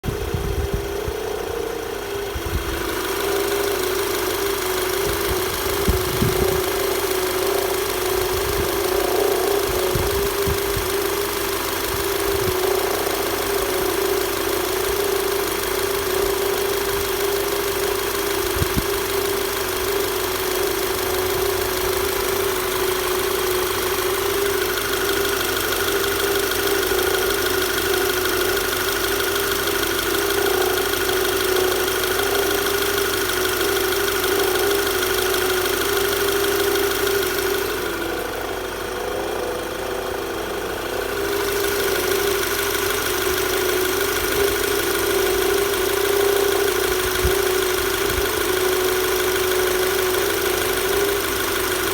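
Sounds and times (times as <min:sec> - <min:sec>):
car engine running: 0:00.0 - 0:51.9
engine knocking: 0:00.0 - 0:51.9.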